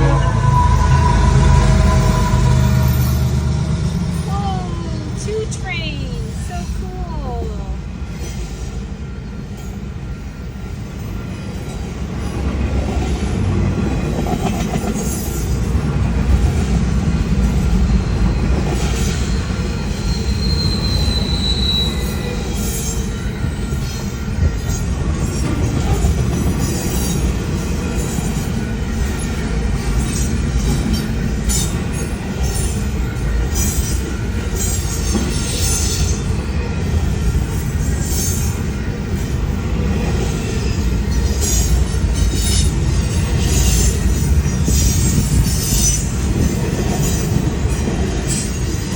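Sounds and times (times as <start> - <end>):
high wheel squeal: 0.0 - 4.4, 19.0 - 24.9
train rumbling past: 0.0 - 48.9.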